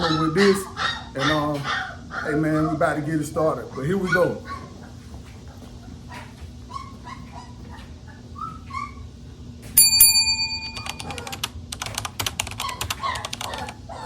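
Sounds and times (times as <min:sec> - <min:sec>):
puppies whimpering: 0:00.0 - 0:09.2, 0:12.6 - 0:14.0
metallic bell-like ring: 0:09.8 - 0:11.1.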